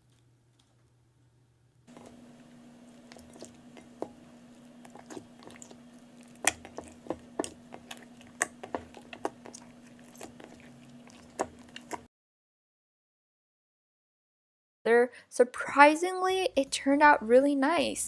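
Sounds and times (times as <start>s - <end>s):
faint steady hum: 0.0s - 12.1s.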